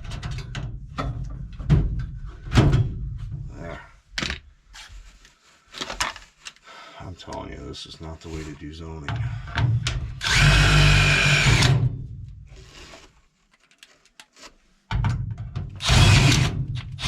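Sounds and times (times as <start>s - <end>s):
cordless drill whining: 10.2s - 11.8s, 15.8s - 17.0s.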